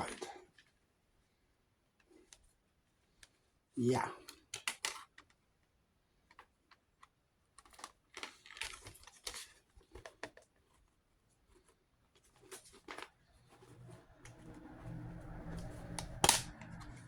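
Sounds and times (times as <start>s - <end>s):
plastic case clicks and rustles: 4.3s - 5.4s, 6.3s - 10.8s, 15.6s - 17.0s
low hum: 13.5s - 17.0s.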